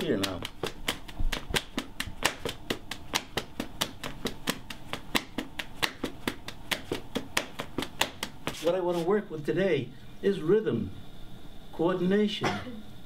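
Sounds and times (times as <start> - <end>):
hand claps and taps: 0.0 - 8.6.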